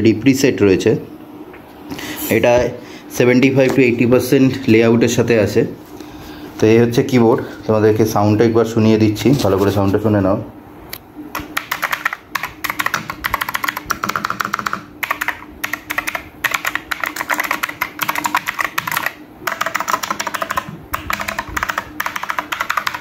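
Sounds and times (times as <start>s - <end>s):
mechanical keyboard typing: 11.3s - 23.0s.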